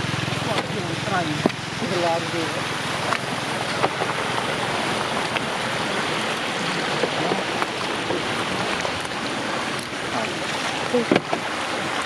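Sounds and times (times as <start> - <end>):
flowing water rushing: 0.0 - 12.0.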